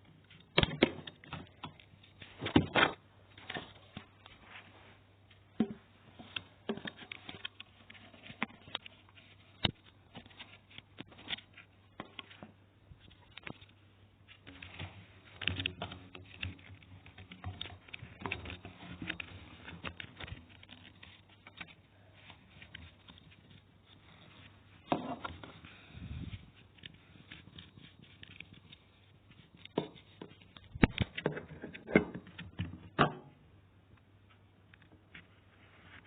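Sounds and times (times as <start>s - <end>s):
hard objects clicking and knocking: 14.4s - 21.8s, 29.6s - 33.4s.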